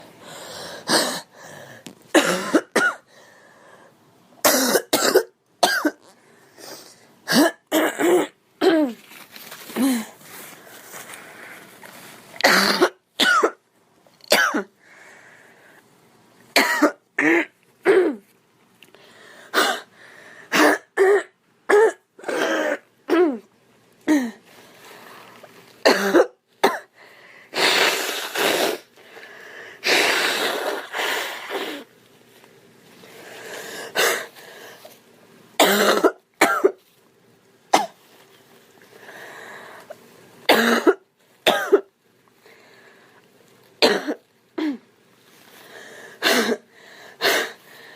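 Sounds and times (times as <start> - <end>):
woman coughing: 2.1 - 3.1, 4.4 - 6.1, 7.3 - 9.0, 12.4 - 13.6, 14.3 - 14.7, 16.6 - 18.2, 19.5 - 19.9, 20.5 - 23.5, 25.8 - 26.9, 35.6 - 36.8, 37.7 - 38.0, 40.5 - 41.9, 43.8 - 44.8, 46.2 - 47.5.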